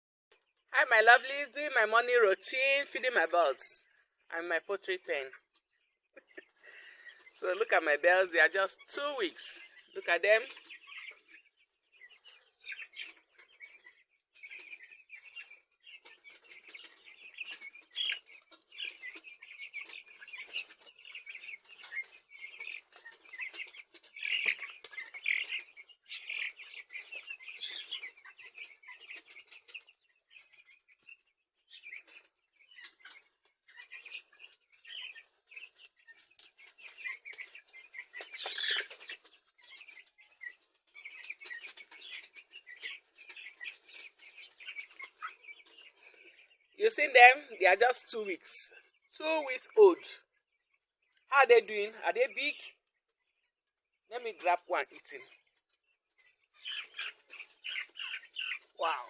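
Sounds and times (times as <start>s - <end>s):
chicks peeping: 0.3s - 59.0s.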